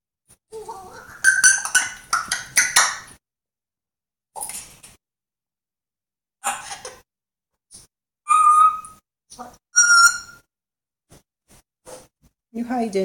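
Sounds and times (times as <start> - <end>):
parrot whistled calls: 8.3 - 9.0, 9.8 - 10.4.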